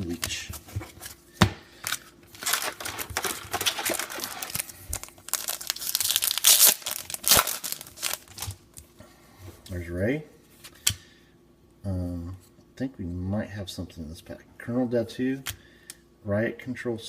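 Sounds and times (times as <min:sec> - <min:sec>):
wrapper crinkling and tearing: 0:01.8 - 0:08.8.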